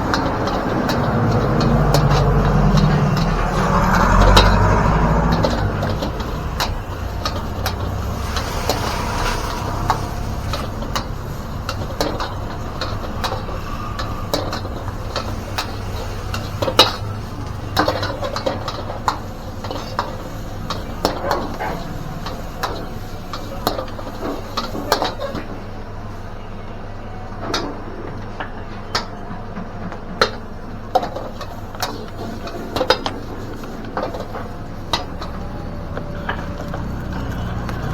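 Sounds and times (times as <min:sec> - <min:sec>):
metal spatula scraping wok: 0:00.0 - 0:19.0.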